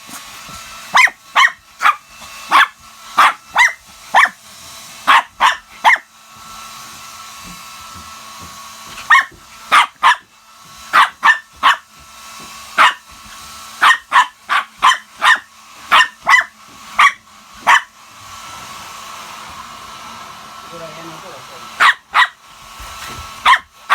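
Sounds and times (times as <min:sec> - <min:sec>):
hair dryer hum: 0:00.0 - 0:23.9
dog barking sharply: 0:00.9 - 0:04.4, 0:05.0 - 0:06.1, 0:09.0 - 0:10.3, 0:10.9 - 0:11.9, 0:12.8 - 0:13.0, 0:13.8 - 0:17.9, 0:21.8 - 0:22.4, 0:23.4 - 0:23.9.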